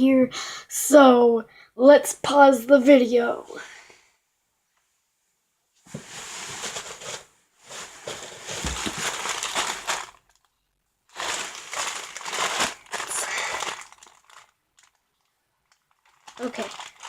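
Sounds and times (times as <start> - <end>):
plastic package crinkling: 8.0 - 17.0.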